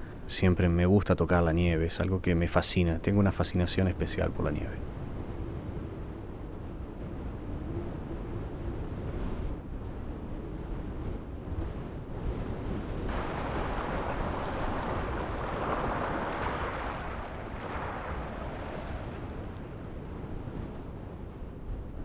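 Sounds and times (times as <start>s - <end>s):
wind rumbling on microphone: 3.8s - 22.0s
surf hissing: 13.1s - 19.8s.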